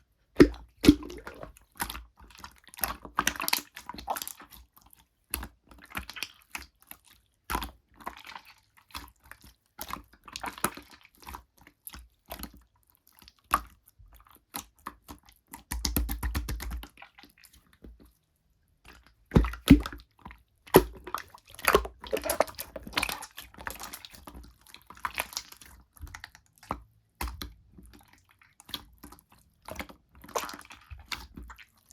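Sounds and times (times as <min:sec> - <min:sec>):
slime clicking and squishing: 0:00.4 - 0:04.7, 0:18.9 - 0:31.9.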